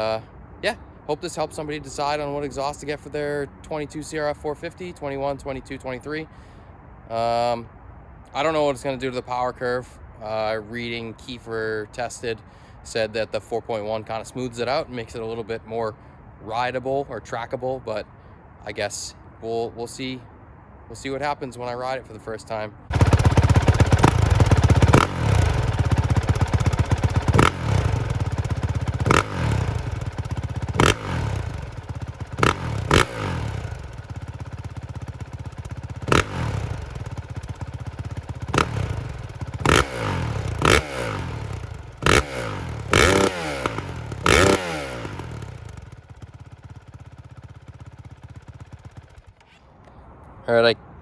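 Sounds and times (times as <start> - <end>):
dirt bike engine revving: 22.9 - 49.4.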